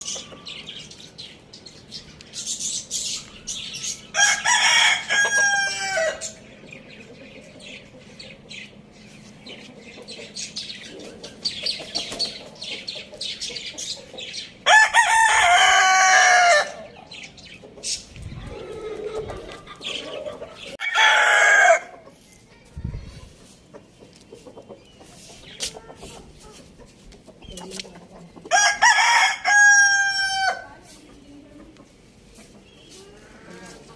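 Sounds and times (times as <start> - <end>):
chicken clucking and chirping: 0.0 - 33.9
rooster crowing: 4.1 - 6.4, 14.7 - 16.8, 20.8 - 21.9, 28.5 - 30.7.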